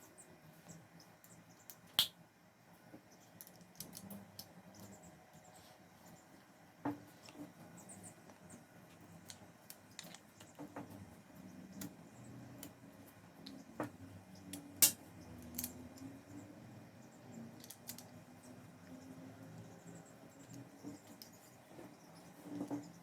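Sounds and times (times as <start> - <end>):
clicks and taps of handled tools: 9.3 - 11.0.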